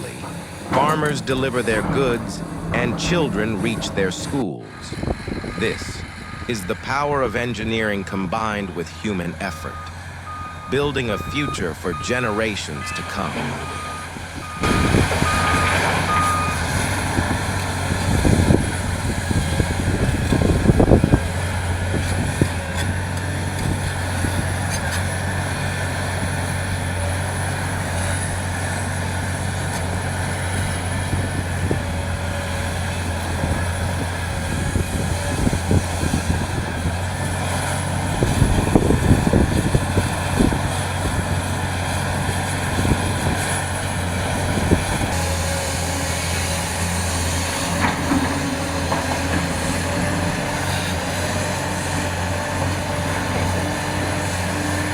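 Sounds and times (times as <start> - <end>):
machinery clatter: 0.0 - 7.4
truck reversing alarm beeps: 0.0 - 21.5
heavy diesel machinery running: 0.0 - 54.9.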